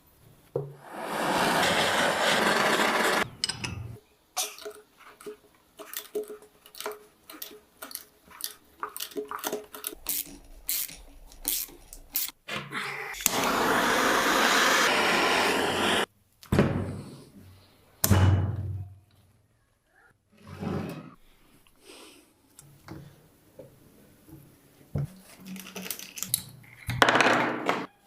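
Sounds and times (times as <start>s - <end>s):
tools and parts clicking: 3.3s - 12.4s, 25.2s - 27.1s
steady hissing: 13.1s - 16.1s.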